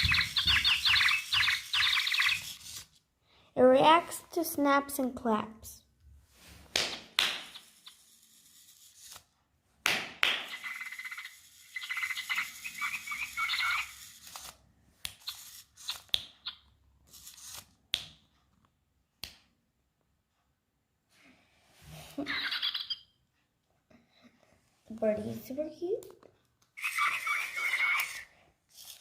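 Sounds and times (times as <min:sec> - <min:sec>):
toy bird electronic chirps: 0:00.0 - 0:02.8, 0:07.5 - 0:08.2, 0:10.5 - 0:14.5, 0:15.2 - 0:16.7, 0:22.3 - 0:23.1, 0:26.8 - 0:28.3
sharp snaps or claps: 0:06.7 - 0:07.6, 0:09.8 - 0:10.6, 0:19.2 - 0:19.5.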